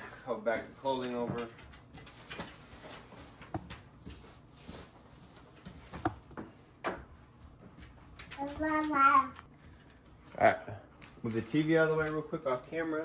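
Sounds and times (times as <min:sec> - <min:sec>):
household items thumping: 0:00.0 - 0:07.2.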